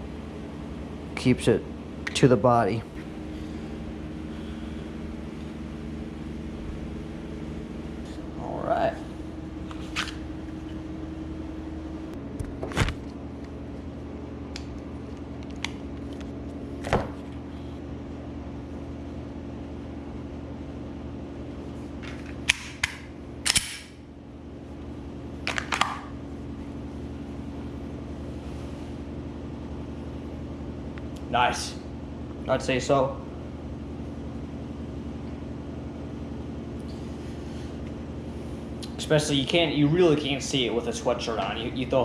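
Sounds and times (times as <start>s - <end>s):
low room hum: 0.0s - 42.0s
sharp handling clicks: 22.1s - 23.9s.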